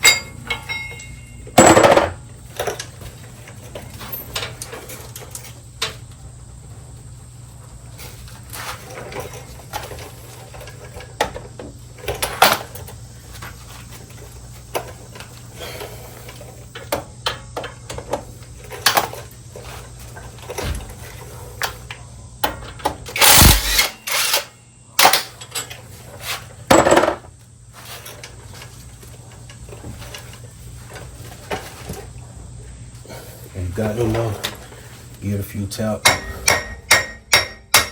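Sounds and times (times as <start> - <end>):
wrench and metal parts clinking: 0.0 - 2.9, 23.1 - 25.8
sharp metal knocks: 36.0 - 37.9.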